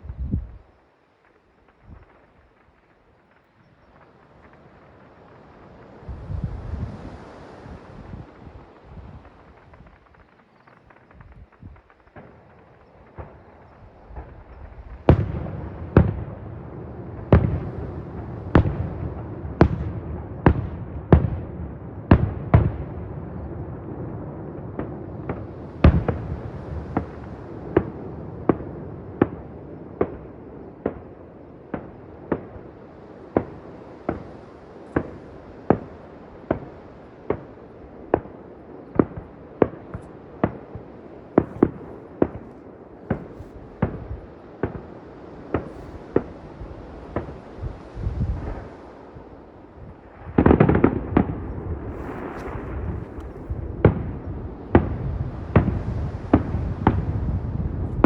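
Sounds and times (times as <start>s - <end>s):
fireworks bursting with bangs: 1.2s - 58.0s
continuous rumble: 50.9s - 58.0s.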